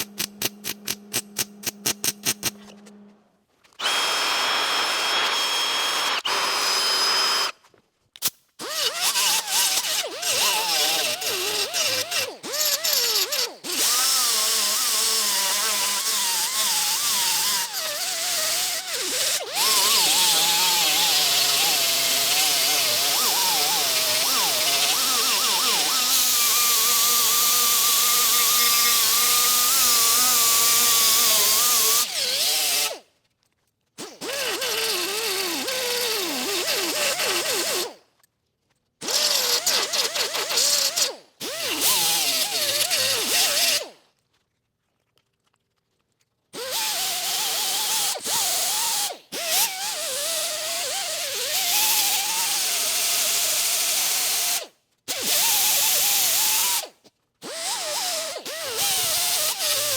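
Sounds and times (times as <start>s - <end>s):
angle grinder grinding metal: 8.8s - 33.0s, 57.7s - 59.9s.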